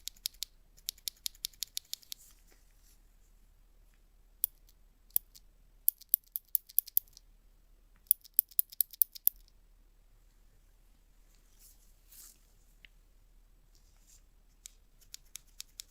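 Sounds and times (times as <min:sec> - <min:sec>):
sharp crisp clicks: 0:00.0 - 0:02.3, 0:04.4 - 0:07.2, 0:08.0 - 0:09.6, 0:14.6 - 0:15.9.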